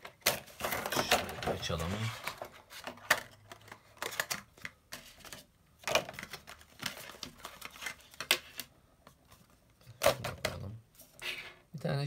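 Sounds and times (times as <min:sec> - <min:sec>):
packaging clicks and scrapes: 0:00.0 - 0:08.7.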